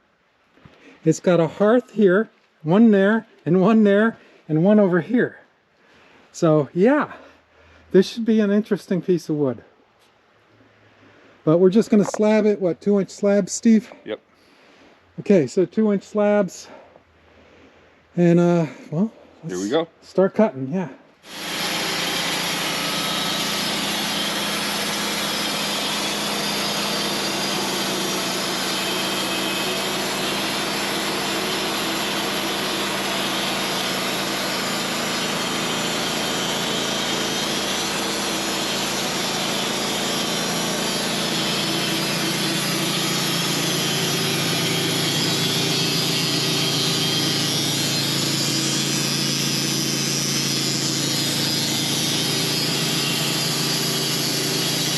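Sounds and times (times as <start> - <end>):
saw blade cutting wood: 19.5 - 19.8, 21.2 - 54.9
motor hum: 21.3 - 54.9.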